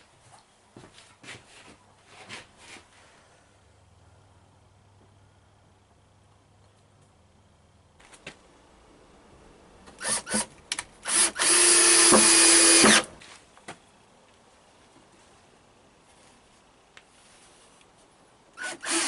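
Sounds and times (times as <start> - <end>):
handheld power tool running: 10.0 - 13.1, 18.6 - 19.0.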